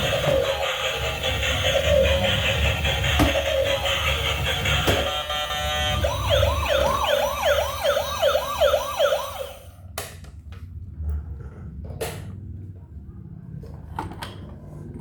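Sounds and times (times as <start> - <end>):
toy siren wailing: 0.0 - 9.7.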